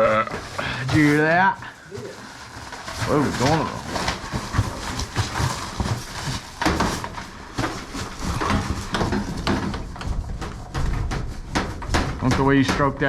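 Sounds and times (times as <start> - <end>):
pipe knocking and scraping: 0.0 - 13.0.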